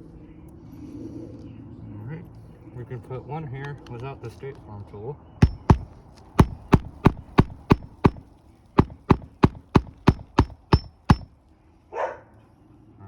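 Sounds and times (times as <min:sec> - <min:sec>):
hammer blows on a nail: 0:05.4 - 0:08.2, 0:08.8 - 0:11.3.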